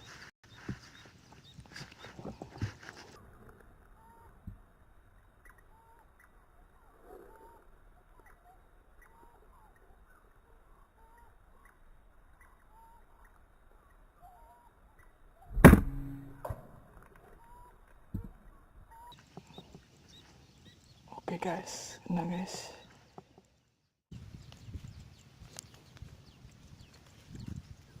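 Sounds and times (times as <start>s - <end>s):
faint bird calls: 0.0s - 4.6s, 5.2s - 15.6s
air rifle shot: 15.5s - 16.6s.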